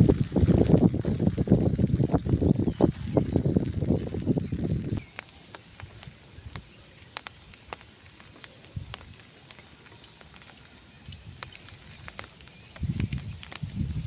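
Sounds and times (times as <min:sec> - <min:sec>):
wind buffeting microphone: 0:00.0 - 0:06.7, 0:11.0 - 0:14.0
faint ticks: 0:00.1 - 0:14.0.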